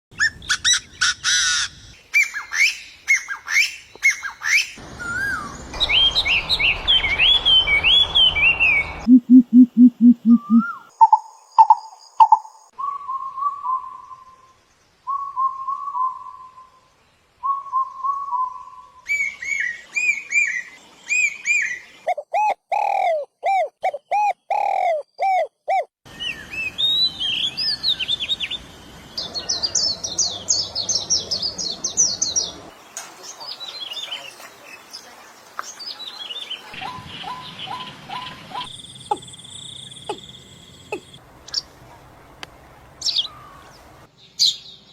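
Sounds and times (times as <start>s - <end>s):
descending bird calls: 0.2s - 14.5s, 35.7s - 41.8s, 43.0s - 44.8s
warbled bird song: 0.2s - 41.8s, 43.0s - 44.9s
high bird chirps: 2.2s - 12.7s, 36.8s - 41.7s
low fast-pulsed bird calls: 4.8s - 12.4s, 36.8s - 41.2s
three-note bird whistles: 5.0s - 10.9s.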